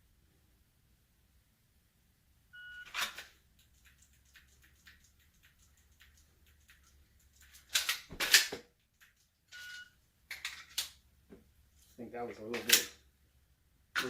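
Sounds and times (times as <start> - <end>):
magazine reload clatter: 7.4 - 8.6.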